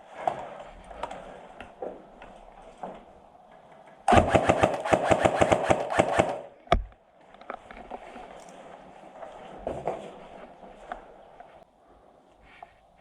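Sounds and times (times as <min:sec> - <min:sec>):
airsoft gun automatic fire: 0:04.1 - 0:06.6.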